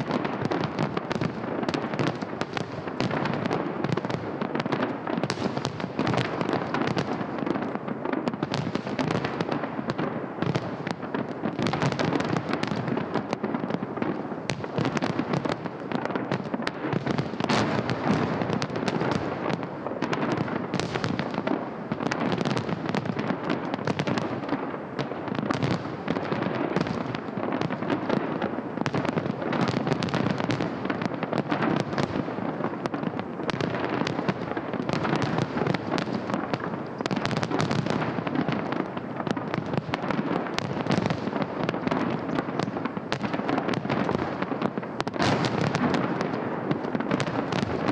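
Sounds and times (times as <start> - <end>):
fireworks bangs and crackles: 0.0 - 47.9.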